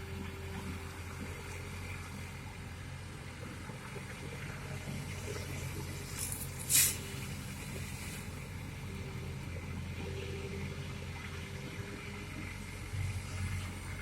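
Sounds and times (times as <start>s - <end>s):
excavator diesel engine running: 0.0s - 14.0s
short loud hiss: 6.6s - 7.1s.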